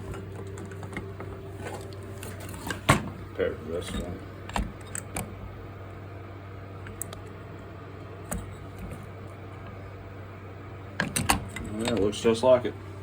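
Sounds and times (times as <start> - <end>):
steady low hum: 0.0 - 13.0
clicks and knocks of parts handled: 0.1 - 3.2, 3.8 - 5.4.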